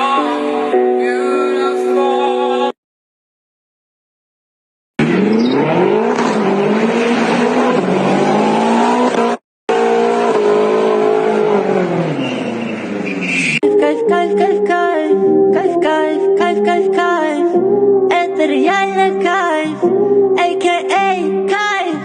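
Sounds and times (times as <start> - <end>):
car engine accelerating: 5.0 - 13.6.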